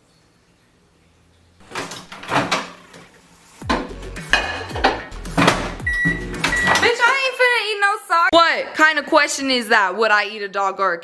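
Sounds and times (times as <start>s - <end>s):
kitchenware knocks and rattles: 1.6s - 5.8s
heavy thumps: 3.6s - 6.7s.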